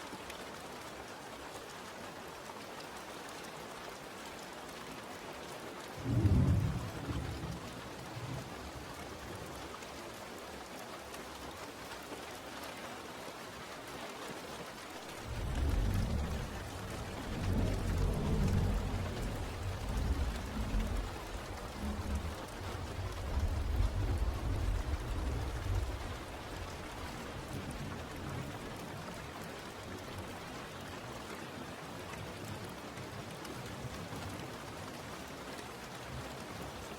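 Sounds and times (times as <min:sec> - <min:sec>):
rain falling: 0:00.0 - 0:36.9
thunder rumbling: 0:06.0 - 0:07.6, 0:15.0 - 0:28.6.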